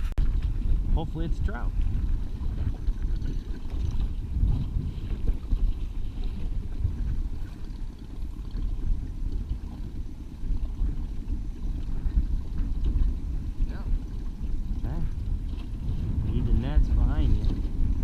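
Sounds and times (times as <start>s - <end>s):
boat engine rumble: 0.0s - 18.0s
wind buffeting microphone: 0.0s - 18.0s.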